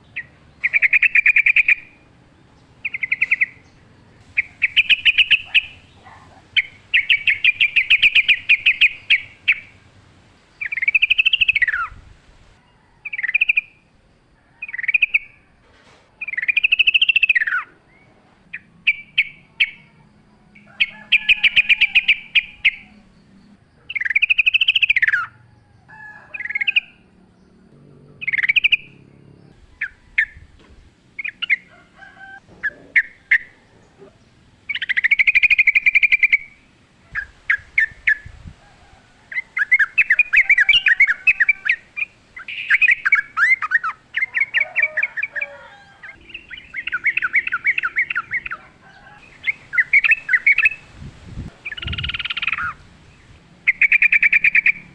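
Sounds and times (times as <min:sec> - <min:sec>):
bulbul singing: 0:00.0 - 0:12.1, 0:28.0 - 0:54.9.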